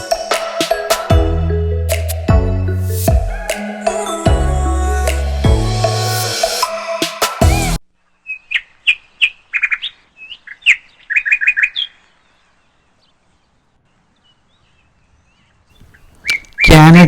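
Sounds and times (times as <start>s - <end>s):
sparrows chirping: 8.2s - 17.0s.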